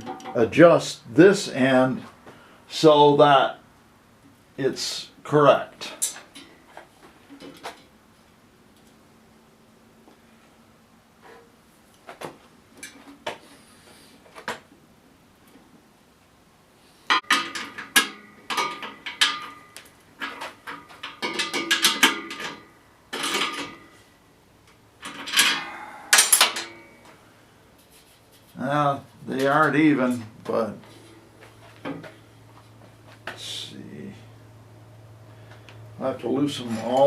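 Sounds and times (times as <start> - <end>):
metal parts clanking: 17.2 - 24.0, 25.0 - 27.1.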